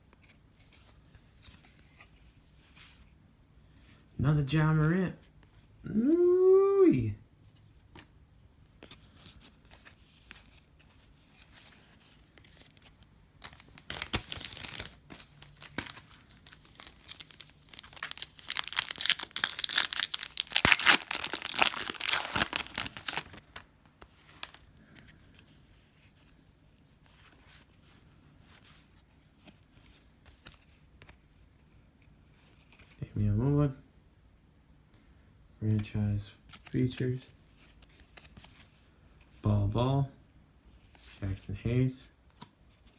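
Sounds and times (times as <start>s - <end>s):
plastic wrapper tearing and crinkling: 13.4s - 24.7s.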